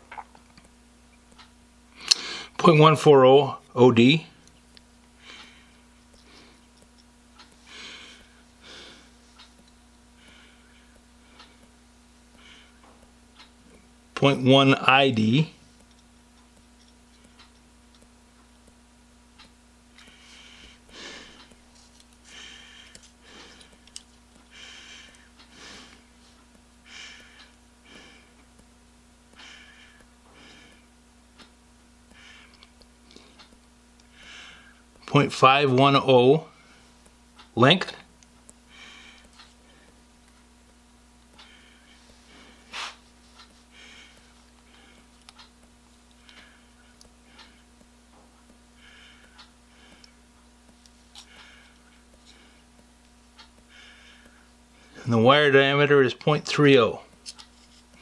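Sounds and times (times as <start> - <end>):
faint steady hum: 0.0 - 58.0
man breathing: 2.0 - 2.6, 5.2 - 6.8, 7.6 - 9.4, 10.2 - 11.7, 12.3 - 13.0, 20.0 - 21.6, 22.2 - 28.4, 29.3 - 30.9, 32.1 - 34.9, 38.7 - 40.0, 41.4 - 43.0, 43.7 - 45.2, 46.2 - 47.8, 48.8 - 50.2, 51.2 - 52.7, 53.7 - 55.1.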